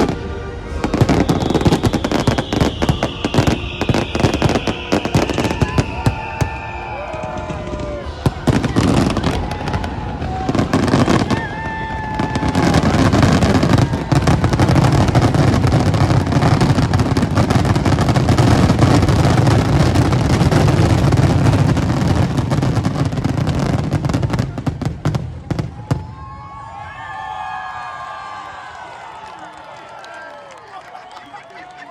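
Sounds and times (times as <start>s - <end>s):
fireworks bangs and crackles: 0.0s - 27.5s.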